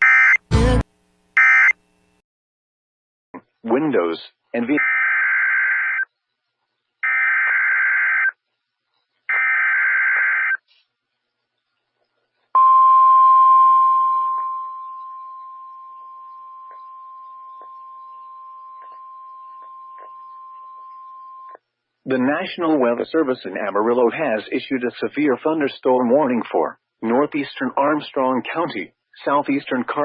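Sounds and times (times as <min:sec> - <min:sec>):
steady warning alarm tone: 0:12.6 - 0:21.6.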